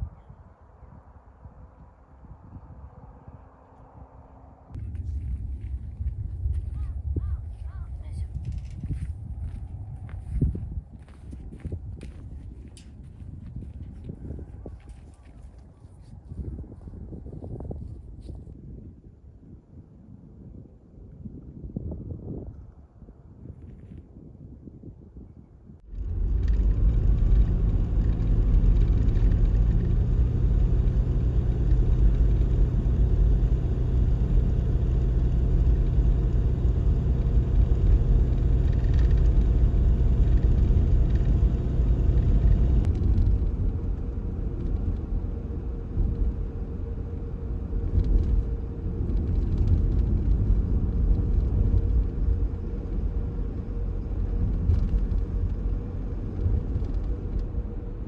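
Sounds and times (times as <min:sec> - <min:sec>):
faint engine hum: 0:00.0 - 0:18.6, 0:25.8 - 0:58.0
vehicle road and engine rumble: 0:25.8 - 0:58.0.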